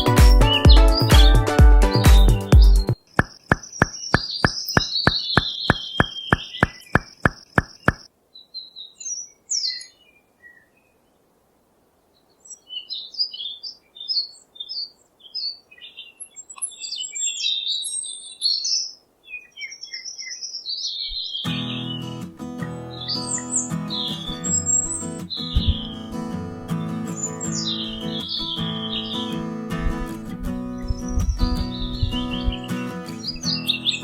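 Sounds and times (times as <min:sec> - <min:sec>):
small birds chirping: 0:00.0 - 0:11.2, 0:12.1 - 0:34.0
steady ticking: 0:03.2 - 0:08.1.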